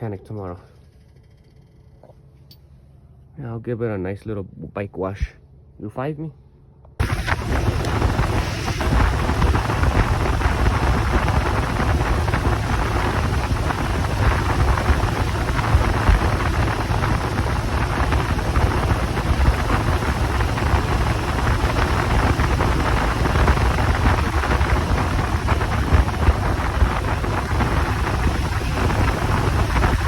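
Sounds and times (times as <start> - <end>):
wind rushing over microphone: 7.0 - 30.0.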